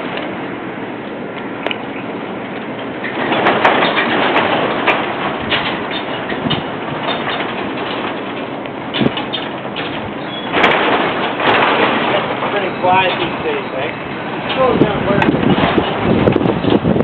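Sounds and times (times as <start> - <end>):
carriage rumbling on rails: 0.0 - 17.0
clicks and clanks: 2.5 - 16.9.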